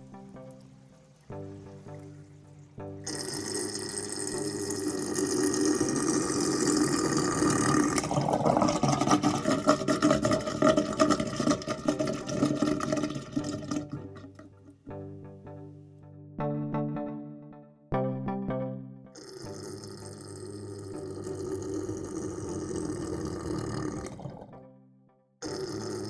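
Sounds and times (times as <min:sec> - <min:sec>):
water draining down plughole: 0:03.1 - 0:14.8, 0:19.2 - 0:24.5, 0:25.4 - 0:26.0.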